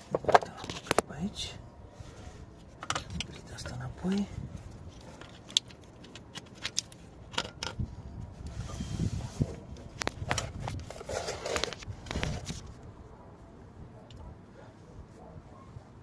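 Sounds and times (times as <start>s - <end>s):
short scrapes: 8.5s - 9.6s.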